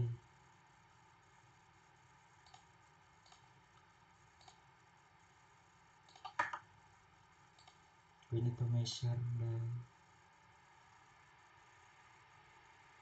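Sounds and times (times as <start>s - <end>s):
faint room hiss: 0.0s - 13.0s
computer mouse clicking: 2.4s - 4.6s, 6.0s - 6.6s, 7.5s - 7.8s.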